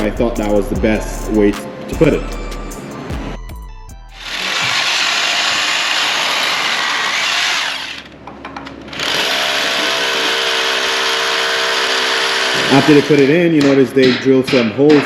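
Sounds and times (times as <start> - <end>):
power drill boring into floor: 4.2 - 8.1, 8.9 - 13.3.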